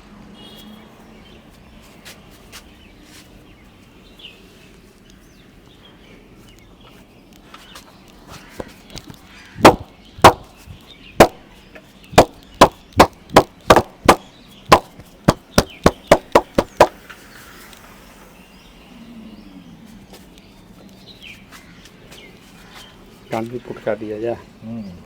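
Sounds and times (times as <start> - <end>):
hands slapping head: 12.2 - 17.0.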